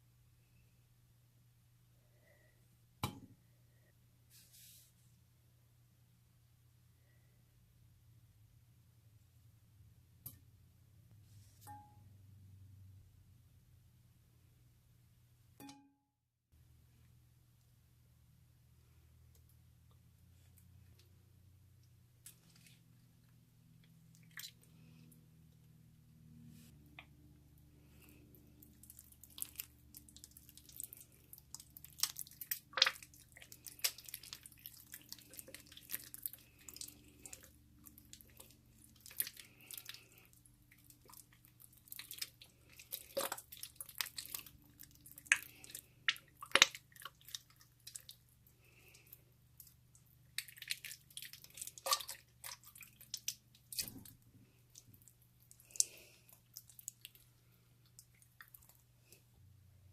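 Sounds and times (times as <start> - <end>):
faint steady hum: 16.6 - 59.9
slime squelching: 22.1 - 25.2, 26.7 - 59.3.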